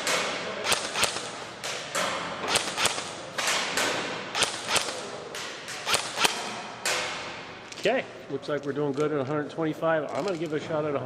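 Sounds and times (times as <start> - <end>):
airsoft gun shots: 0.0 - 5.1, 5.8 - 7.3.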